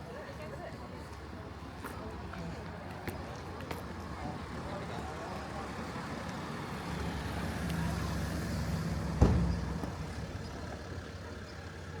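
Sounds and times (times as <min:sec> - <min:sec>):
sharp loud thump: 0:09.2 - 0:09.6.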